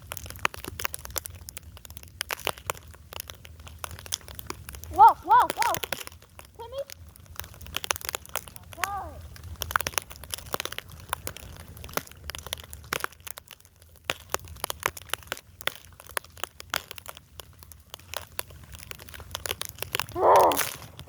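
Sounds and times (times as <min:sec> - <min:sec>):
brief voice-like sound: 0:20.2 - 0:20.7.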